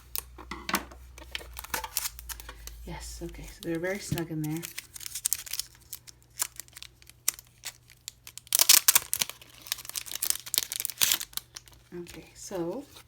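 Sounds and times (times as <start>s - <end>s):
packaging rustling and crinkling: 0.0s - 13.0s.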